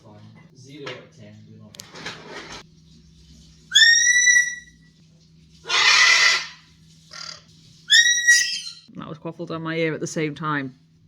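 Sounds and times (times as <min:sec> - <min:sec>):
macaw screech: 0:03.7 - 0:04.8, 0:05.7 - 0:08.9
parrot whistled call: 0:03.7 - 0:04.8, 0:05.7 - 0:06.6, 0:07.2 - 0:08.9
soft parrot call: 0:03.7 - 0:04.8, 0:05.7 - 0:08.9.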